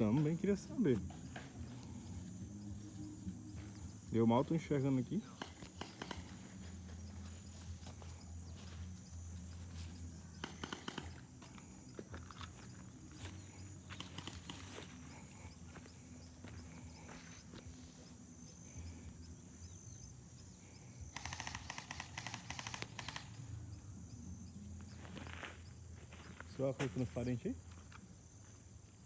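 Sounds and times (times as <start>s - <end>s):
airsoft guns firing in bursts: 5.2s - 6.8s, 10.4s - 11.6s, 13.9s - 14.8s, 21.1s - 23.6s.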